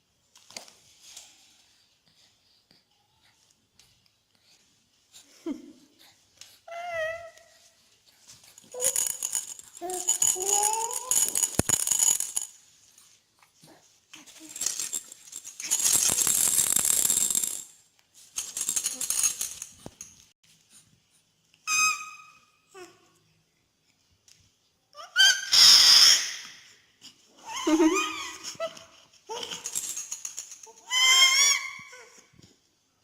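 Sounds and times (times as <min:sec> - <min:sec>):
baby squealing and cooing: 0:06.7 - 0:07.7, 0:08.6 - 0:12.2, 0:25.0 - 0:26.6, 0:27.3 - 0:32.2
rattly shaking noise: 0:08.2 - 0:12.6, 0:14.2 - 0:20.3, 0:27.7 - 0:31.1.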